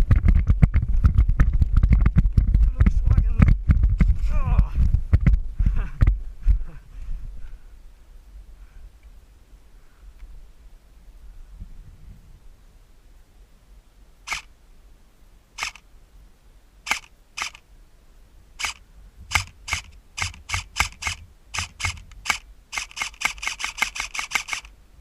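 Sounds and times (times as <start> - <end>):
airsoft gun shots: 16.9 - 17.6, 18.6 - 24.7.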